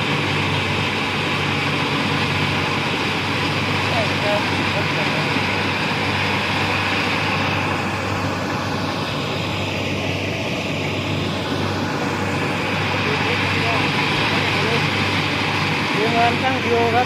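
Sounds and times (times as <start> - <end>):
combine harvester engine hum: 0.0 - 17.0
machinery noise: 0.0 - 17.0.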